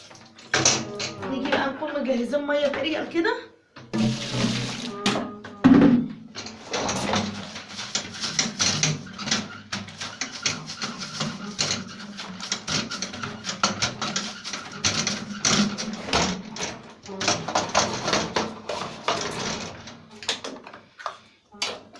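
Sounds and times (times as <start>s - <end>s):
shower water splashing on plastic: 4.0s - 5.0s.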